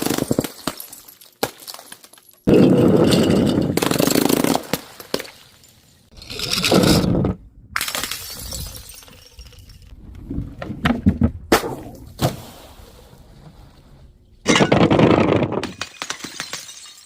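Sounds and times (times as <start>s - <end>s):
glass bottles breaking: 0.1s - 6.7s, 7.8s - 9.9s, 14.4s - 17.0s
glass shards tinkling: 16.0s - 17.0s.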